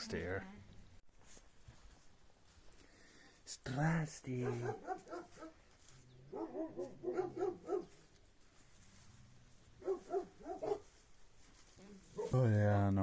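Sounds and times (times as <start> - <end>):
dogs barking in high yips: 4.4 - 5.6, 6.3 - 8.0, 9.8 - 11.0, 12.1 - 12.4.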